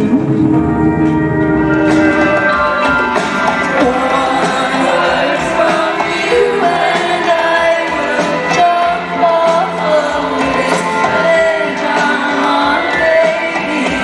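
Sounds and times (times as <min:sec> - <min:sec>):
live band playing: 0:00.0 - 0:14.0
person singing long notes: 0:00.0 - 0:14.0.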